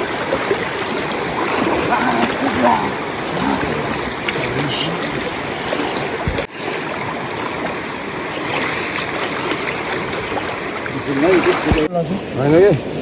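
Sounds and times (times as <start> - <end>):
river flowing over rocks: 0.0 - 11.9
low thump: 6.2 - 6.5.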